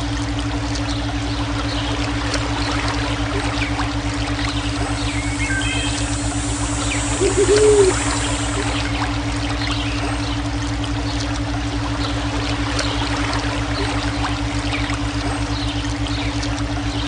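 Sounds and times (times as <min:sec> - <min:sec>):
low rapidly pulsing hum: 0:00.0 - 0:17.0
water trickling and splashing: 0:00.0 - 0:17.0
steady synthetic mid tone: 0:02.6 - 0:12.5.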